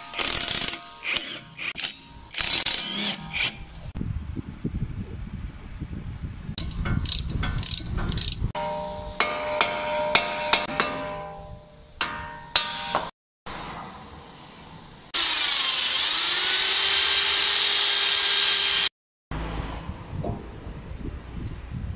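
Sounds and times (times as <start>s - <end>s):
power tool running: 0.0s - 3.6s, 15.2s - 18.9s
hammer blows on metal: 6.6s - 13.1s.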